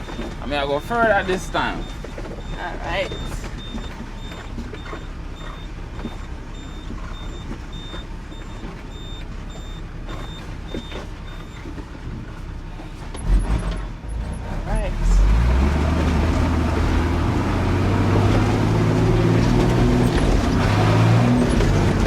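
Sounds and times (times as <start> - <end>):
reversing alarm beeping: 0.0 - 11.8
diesel truck engine running: 0.0 - 22.0.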